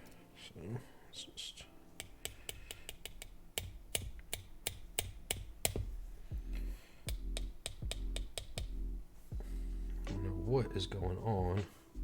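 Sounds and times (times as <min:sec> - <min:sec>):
low steady music-like tone: 0:00.0 - 0:02.9, 0:05.3 - 0:12.0
sharp dry clicks: 0:02.0 - 0:05.8.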